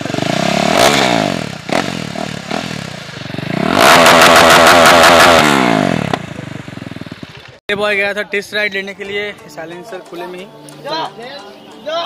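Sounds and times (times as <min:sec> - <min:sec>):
motorcycle engine revving: 0:00.0 - 0:07.6
exhaust pop: 0:03.9 - 0:07.5.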